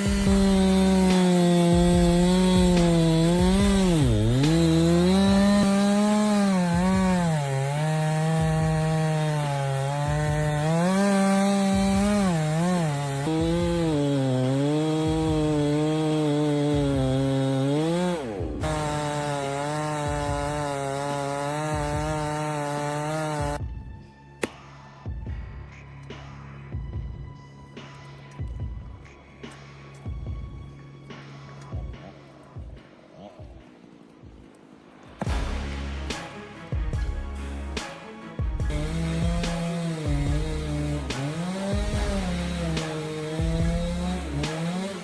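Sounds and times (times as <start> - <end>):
chainsaw cutting wood: 0.0 - 23.6, 35.1 - 45.0.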